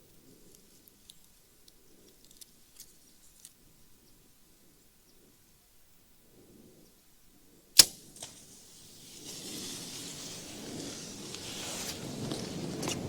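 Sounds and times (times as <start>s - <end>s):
arrow thwack: 7.8s - 8.5s
bowstring snapping: 7.8s - 8.5s
crashing through leaves and brush: 7.8s - 13.0s.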